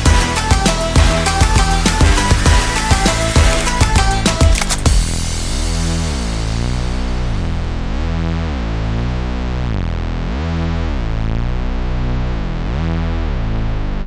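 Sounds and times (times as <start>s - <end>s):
electronic synthesizer music: 0.0s - 6.7s.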